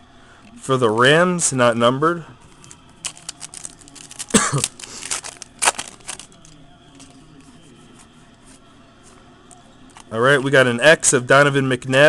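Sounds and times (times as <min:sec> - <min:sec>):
foil wrapper crinkling: 0:02.5 - 0:07.2.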